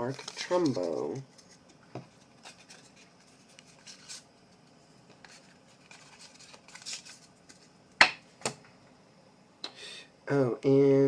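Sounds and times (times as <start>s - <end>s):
cards sliding and shuffling: 0.1s - 4.3s, 5.1s - 7.7s.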